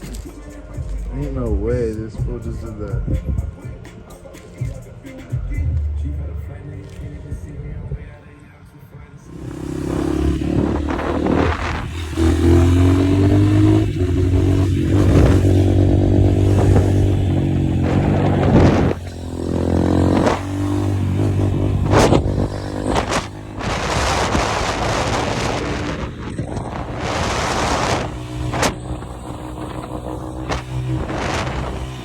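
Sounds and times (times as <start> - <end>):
dirt bike engine revving: 9.3 - 32.0
rushing noise: 9.3 - 32.0.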